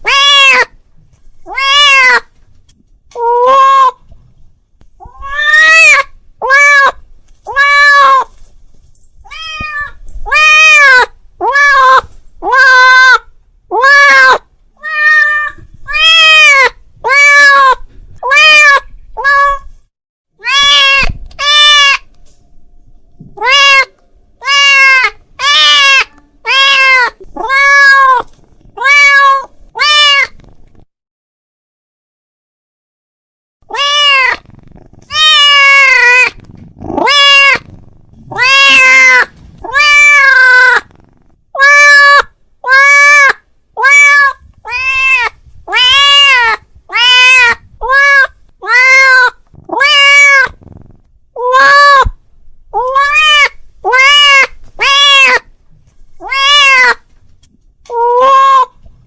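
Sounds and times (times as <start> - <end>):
cat meowing loudly: 0.0 - 0.8, 1.4 - 2.4, 3.1 - 4.0, 5.0 - 8.4, 9.3 - 19.7, 20.4 - 22.1, 23.3 - 30.4, 33.7 - 40.9, 41.5 - 50.8, 51.4 - 55.5, 56.2 - 57.0, 57.9 - 58.8.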